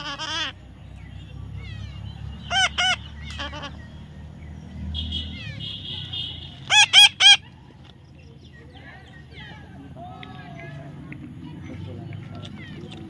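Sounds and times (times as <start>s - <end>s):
parrot squawking: 0.0s - 0.6s, 1.6s - 3.8s, 6.7s - 7.5s.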